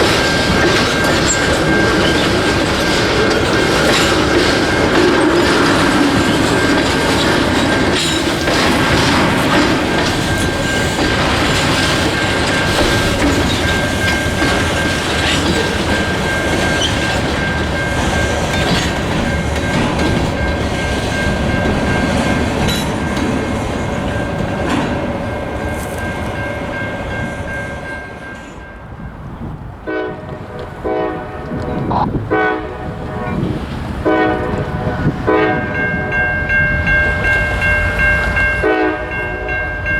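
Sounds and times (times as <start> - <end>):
wheels clacking over rail joints: 0.0 - 39.9
locomotive air horn blasts: 29.9 - 36.0, 38.6 - 39.6.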